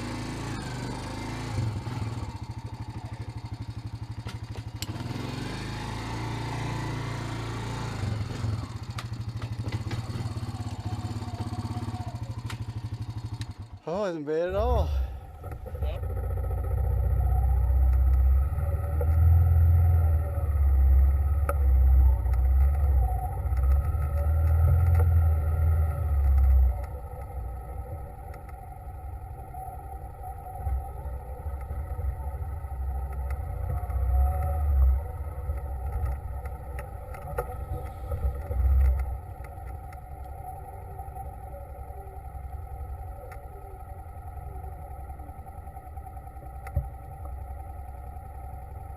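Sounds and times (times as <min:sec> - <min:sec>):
vehicle engine drone: 0:00.0 - 0:48.9
heavy uneven low rumble: 0:08.2 - 0:48.9.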